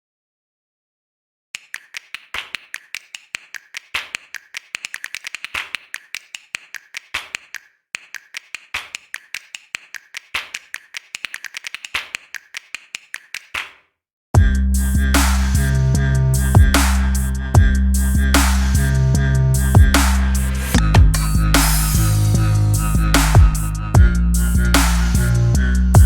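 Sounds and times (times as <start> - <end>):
rapid sharp clicks: 1.6 - 13.8.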